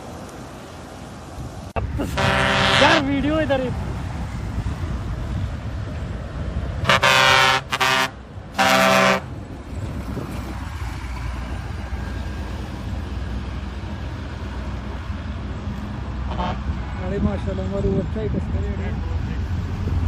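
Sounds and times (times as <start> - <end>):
bus horn blasts: 2.0 - 3.1, 6.8 - 9.4, 16.2 - 16.8.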